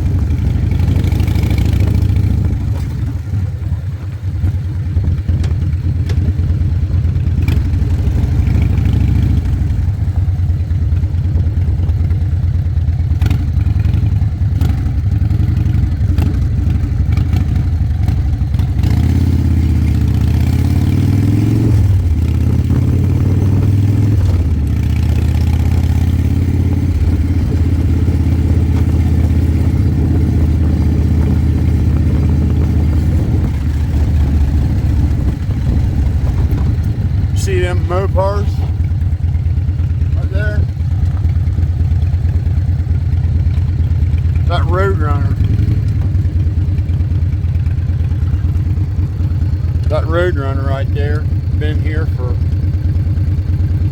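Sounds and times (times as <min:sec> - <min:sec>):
vehicle engine revving and shifting: 0:00.0 - 0:03.2, 0:07.3 - 0:09.8, 0:13.2 - 0:38.8.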